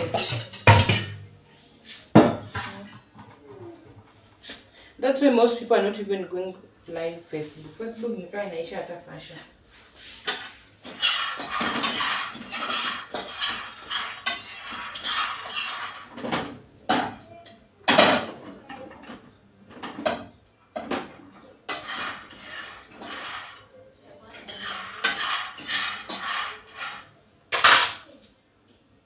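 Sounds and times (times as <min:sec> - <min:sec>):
dishes and cutlery clattering: 0:00.0 - 0:01.3, 0:10.3 - 0:17.2, 0:17.9 - 0:23.6, 0:24.4 - 0:28.0
loud dish clanks: 0:00.0 - 0:01.3, 0:27.5 - 0:28.0.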